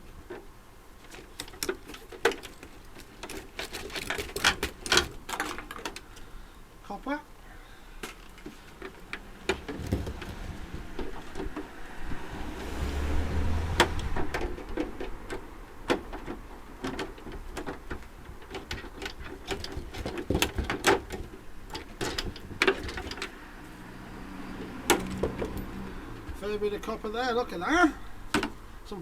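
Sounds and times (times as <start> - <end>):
metal parts knocking and rattling: 0.2 - 6.2, 8.0 - 11.8, 13.8 - 23.4, 24.6 - 26.4.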